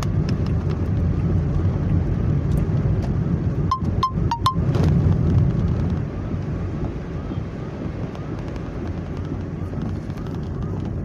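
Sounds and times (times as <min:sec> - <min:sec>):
car interior road and engine rumble: 0:00.0 - 0:11.0
short high beeps: 0:03.7 - 0:04.7.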